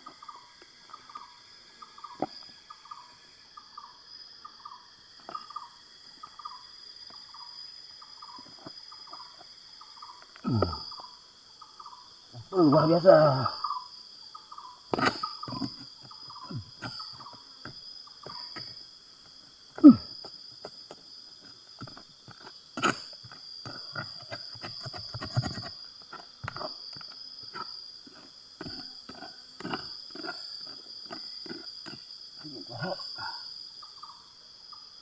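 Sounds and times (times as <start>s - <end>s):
insect chorus: 0.0s - 35.0s
knocks and scrapes: 14.9s - 18.8s, 19.8s - 32.1s.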